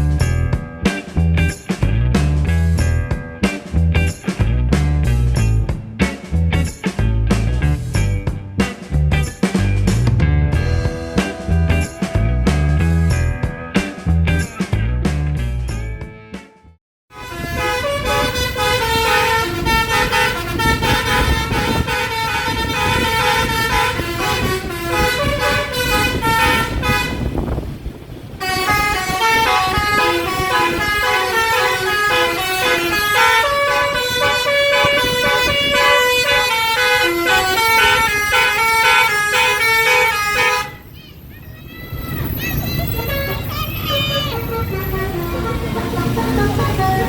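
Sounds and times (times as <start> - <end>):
road and engine noise: 0.0 - 16.4, 17.1 - 47.0
multi-trumpet bus horn tune: 10.7 - 13.7, 17.1 - 27.4, 28.4 - 40.9, 43.0 - 47.0.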